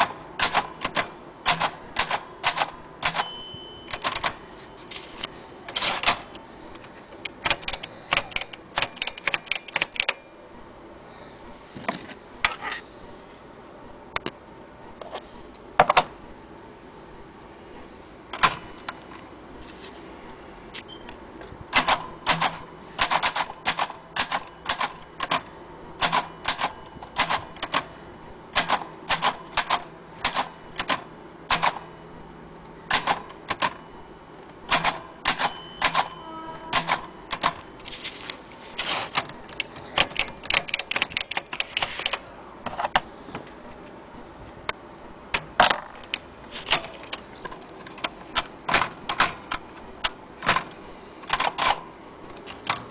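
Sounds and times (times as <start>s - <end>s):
typewriter clacking: 0.0s - 3.2s, 3.9s - 4.4s, 7.4s - 10.2s, 21.8s - 27.9s, 28.6s - 31.8s, 32.9s - 33.8s, 34.7s - 37.6s, 38.9s - 42.2s, 47.9s - 49.6s, 50.4s - 51.8s.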